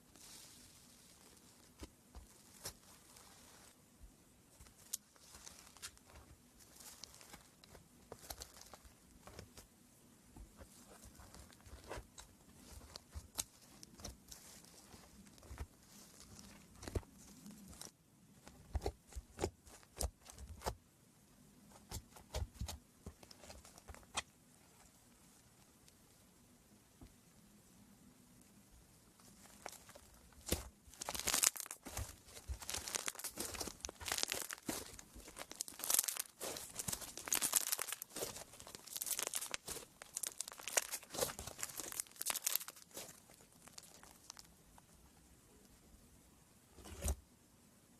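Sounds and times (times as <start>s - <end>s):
slime squeezed crackling: 29.4s - 44.5s.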